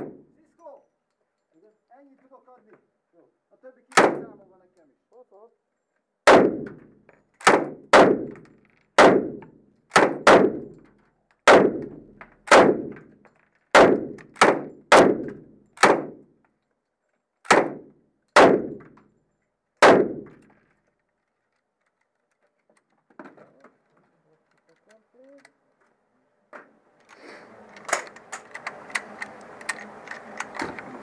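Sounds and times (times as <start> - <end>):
semi-automatic gunshots echoing: 3.9 - 4.4, 6.2 - 6.8, 7.4 - 8.4, 9.0 - 10.7, 11.5 - 13.0, 13.7 - 16.2, 17.5 - 18.8, 19.8 - 20.4.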